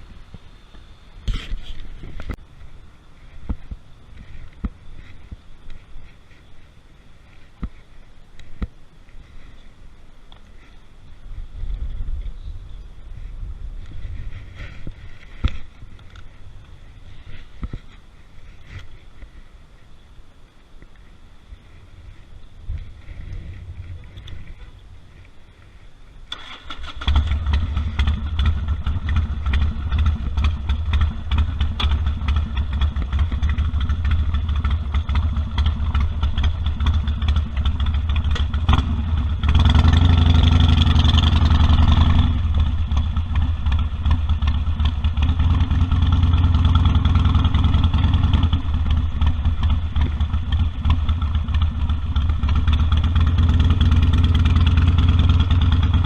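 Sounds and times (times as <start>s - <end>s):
motorcycle engine revving: 26.3s - 56.0s.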